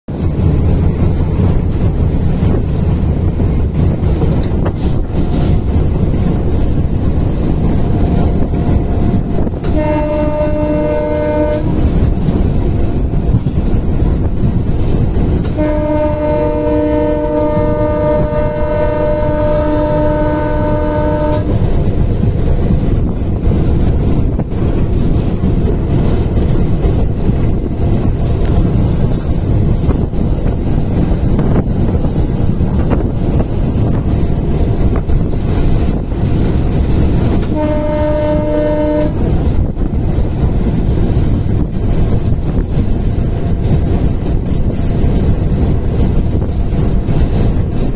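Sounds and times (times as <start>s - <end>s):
moving train rumbling: 0.0s - 47.9s
train horn: 4.3s - 13.7s, 14.9s - 22.9s, 37.3s - 39.7s.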